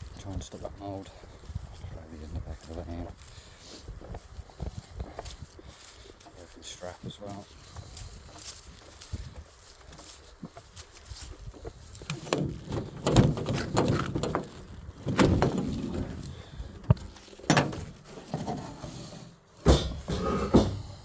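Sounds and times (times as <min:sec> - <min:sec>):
knocks and clatters of loading: 0:12.0 - 0:21.0.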